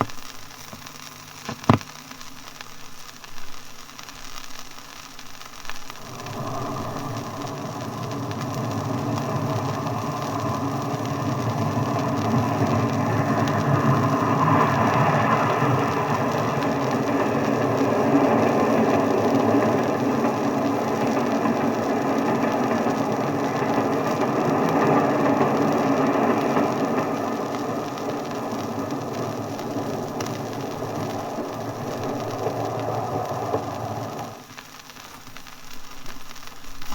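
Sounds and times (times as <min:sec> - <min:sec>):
old disc recording noise: 0:00.0 - 0:36.9
train clattering on track: 0:06.0 - 0:34.4.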